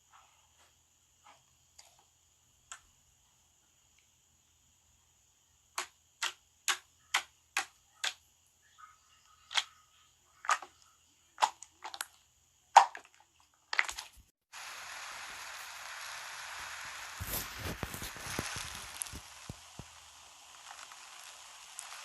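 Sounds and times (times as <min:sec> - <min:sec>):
steady hiss: 0:14.0 - 0:22.0.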